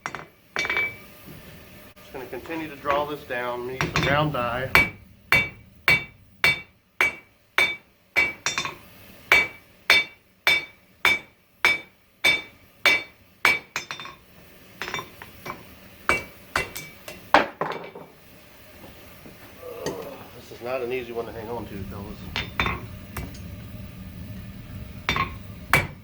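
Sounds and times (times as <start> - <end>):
hammer blows ringing on anvil: 3.8 - 14.2, 14.8 - 17.0, 22.3 - 23.4, 25.1 - 26.0.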